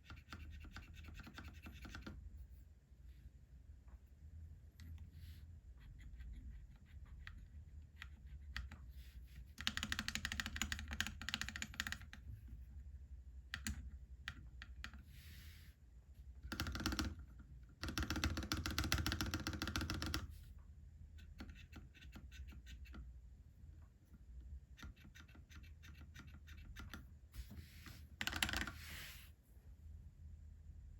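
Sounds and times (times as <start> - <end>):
mechanical keyboard typing: 9.6 - 12.2, 16.4 - 20.3, 28.2 - 28.8.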